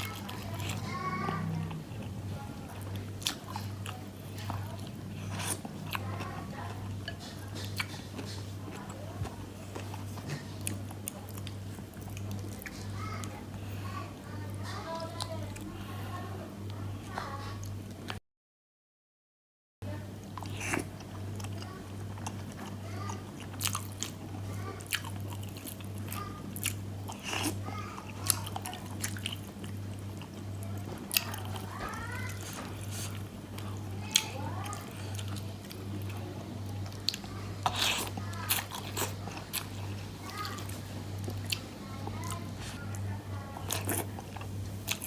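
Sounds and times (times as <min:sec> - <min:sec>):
steady low hum: 0:00.0 - 0:18.1
person chewing and biting: 0:02.8 - 0:08.6, 0:23.4 - 0:24.2, 0:36.8 - 0:42.8.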